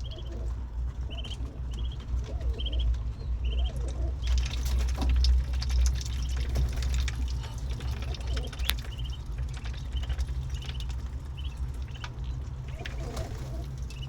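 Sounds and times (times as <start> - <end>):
ducklings peeping: 0.0 - 14.0
ducks dabbling wet food: 0.0 - 14.0.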